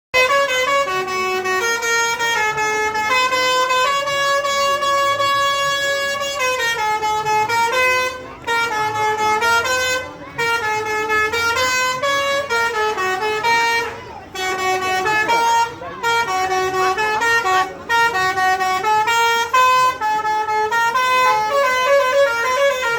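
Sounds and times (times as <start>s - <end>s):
musical bus air horns: 0.1s - 22.9s.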